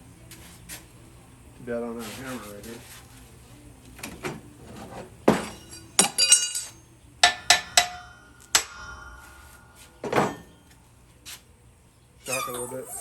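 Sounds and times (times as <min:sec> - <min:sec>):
hammer striking steel: 0:05.3 - 0:11.0.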